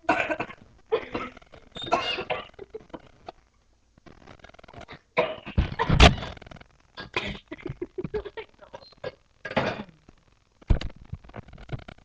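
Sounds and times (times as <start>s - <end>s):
person burping: 9.0s - 10.0s.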